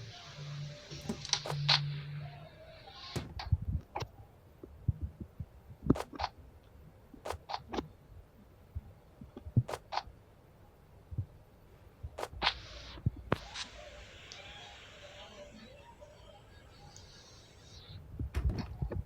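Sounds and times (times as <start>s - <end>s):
rustling strokes: 12.1s - 14.3s.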